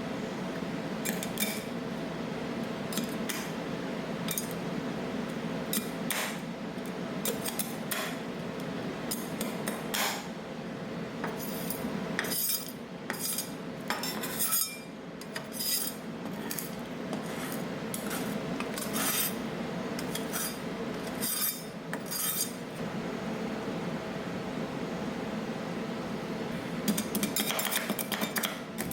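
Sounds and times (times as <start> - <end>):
metal spatulas scraping on steel: 11.3 - 19.4, 20.0 - 22.6.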